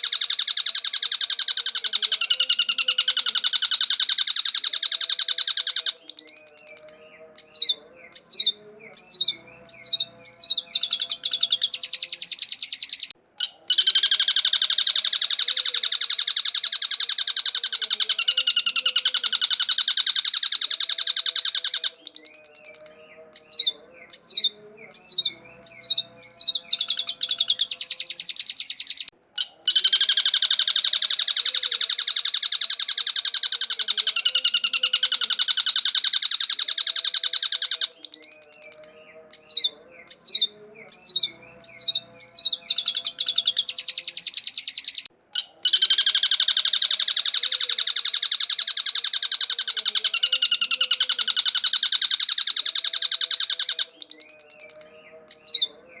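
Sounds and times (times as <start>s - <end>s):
bird harsh chattering trills: 0.0s - 56.0s.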